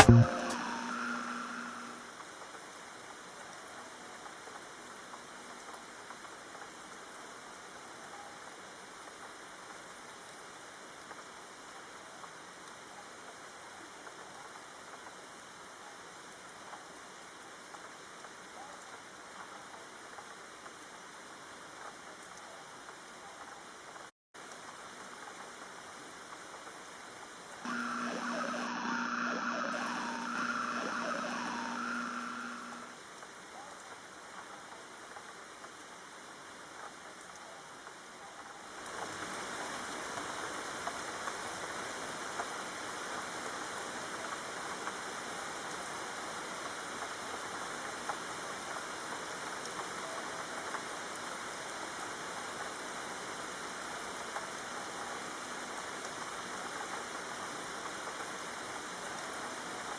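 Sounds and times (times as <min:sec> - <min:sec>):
steady hum: 0:00.0 - 0:02.1, 0:27.7 - 0:33.0
steady rain: 0:00.0 - 0:59.9.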